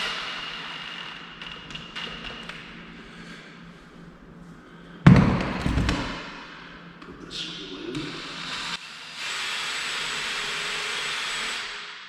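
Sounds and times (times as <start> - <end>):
loud thump: 5.4 - 6.4
brief rattle: 5.6 - 6.4.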